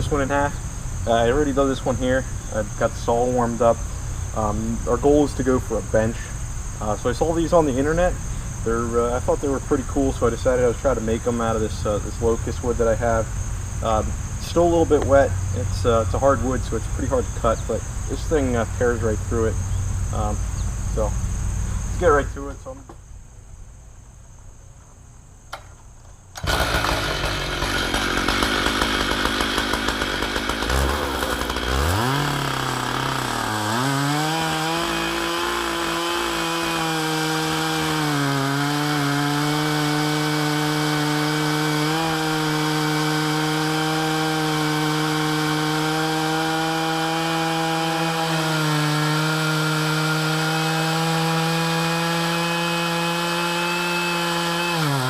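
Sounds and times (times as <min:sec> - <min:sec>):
chainsaw cutting log: 0:26.3 - 0:55.0.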